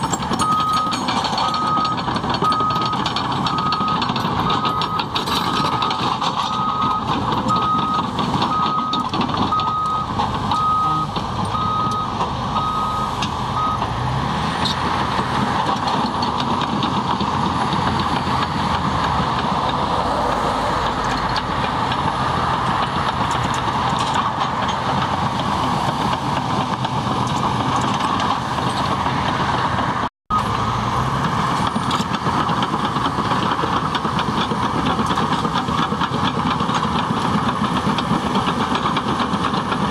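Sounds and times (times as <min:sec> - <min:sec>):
bulldozer diesel engine: 0:00.0 - 0:39.9
reversing alarm beeping: 0:00.4 - 0:13.9, 0:30.3 - 0:30.7.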